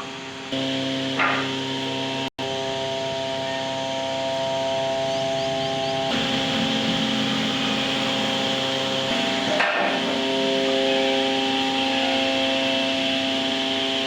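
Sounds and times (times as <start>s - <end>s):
router spindle cutting wood: 0.6s - 14.0s.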